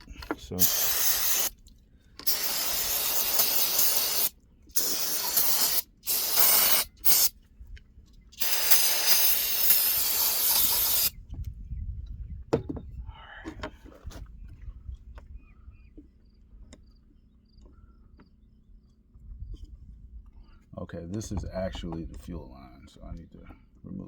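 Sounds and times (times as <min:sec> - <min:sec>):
compressed air hissing blasts: 0:00.6 - 0:01.5, 0:02.2 - 0:07.3, 0:08.4 - 0:11.2.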